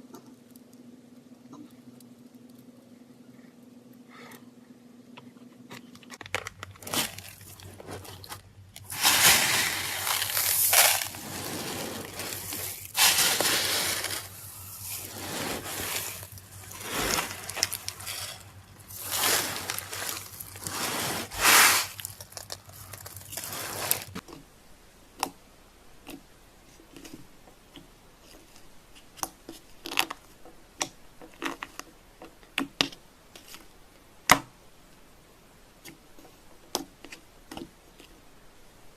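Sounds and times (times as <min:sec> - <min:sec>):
slime crackling and crunching: 0:06.6 - 0:24.2.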